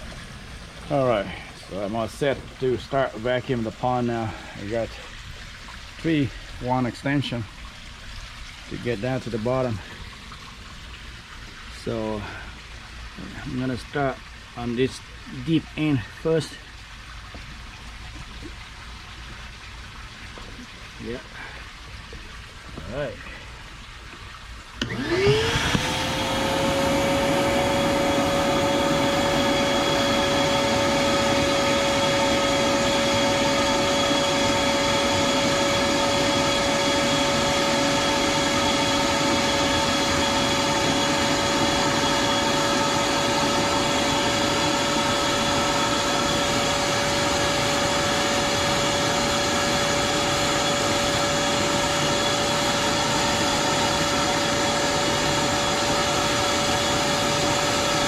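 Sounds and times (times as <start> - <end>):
vacuum motor whine: 24.8 - 58.0.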